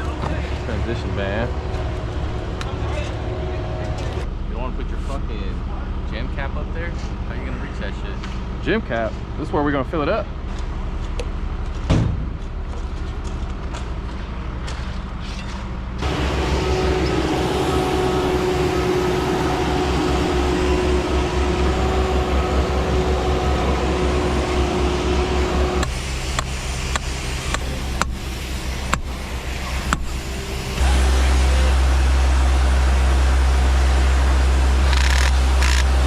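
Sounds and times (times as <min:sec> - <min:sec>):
machine engine running: 0:00.0 - 0:36.0
whine and hiss: 0:16.0 - 0:36.0.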